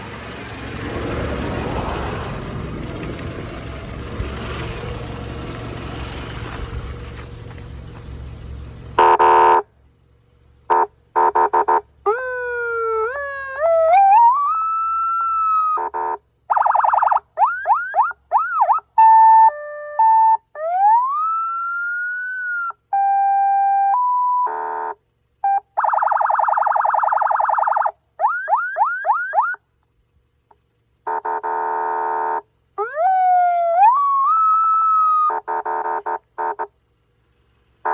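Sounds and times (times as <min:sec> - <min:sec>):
vehicle engine humming: 0:00.0 - 0:37.9
electronic police siren: 0:09.0 - 0:09.6, 0:10.7 - 0:24.6, 0:25.4 - 0:29.6, 0:32.8 - 0:35.6.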